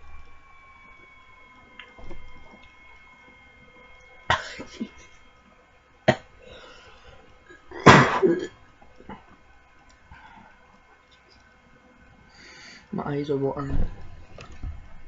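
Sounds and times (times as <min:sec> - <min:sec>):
person coughing: 0:04.3 - 0:05.1, 0:07.7 - 0:08.6.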